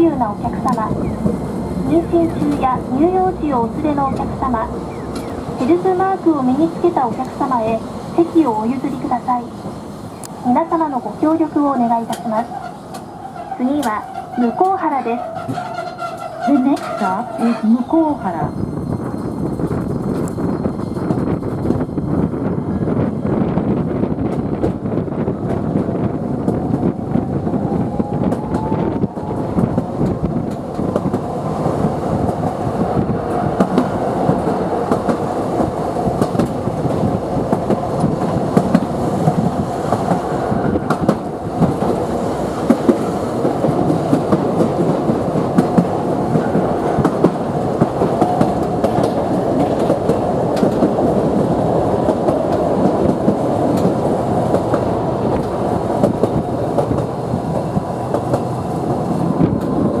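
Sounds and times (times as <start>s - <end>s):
tram wheels rumbling on rail: 0.0s - 60.0s
clicking and clatter over track: 24.1s - 60.0s.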